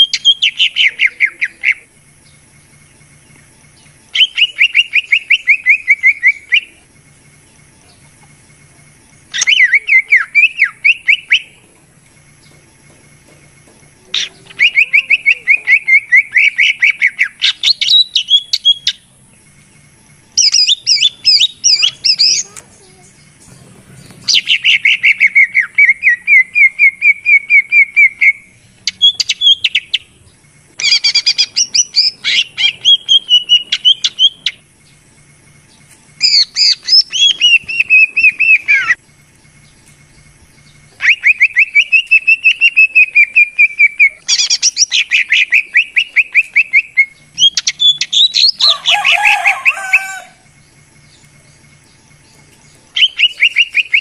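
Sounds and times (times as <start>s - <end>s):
high bird chattering: 0.0s - 1.9s, 14.1s - 19.1s, 20.4s - 34.7s, 36.2s - 39.0s, 40.9s - 50.3s, 52.9s - 54.0s
bird singing rattling trills: 0.0s - 54.0s.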